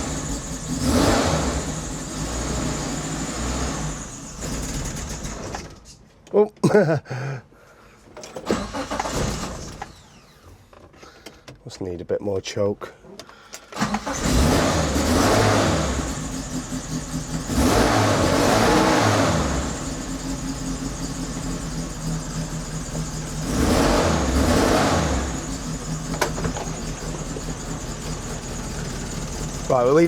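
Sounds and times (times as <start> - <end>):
car engine starting and revving: 0.0 - 5.8, 8.4 - 10.3, 13.8 - 30.0
engine idling: 15.0 - 30.0.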